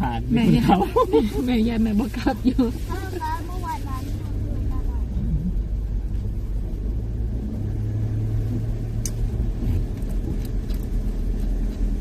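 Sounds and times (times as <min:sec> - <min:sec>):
car engine and tyres rumbling: 0:00.0 - 0:12.0
light ticks: 0:08.9 - 0:12.0.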